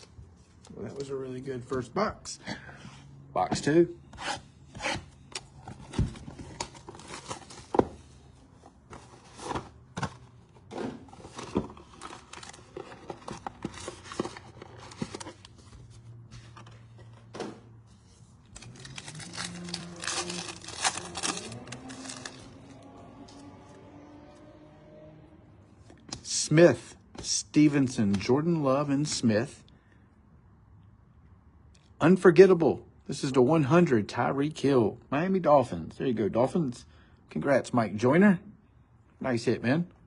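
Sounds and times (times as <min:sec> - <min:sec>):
plastic wrapping crinkling and tearing: 0:18.5 - 0:22.8.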